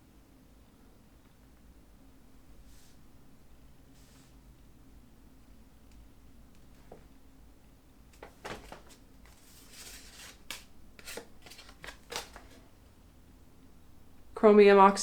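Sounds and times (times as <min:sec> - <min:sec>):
faint room hum: 0:00.0 - 0:15.0
paper cards rustling and clicking: 0:08.1 - 0:12.8.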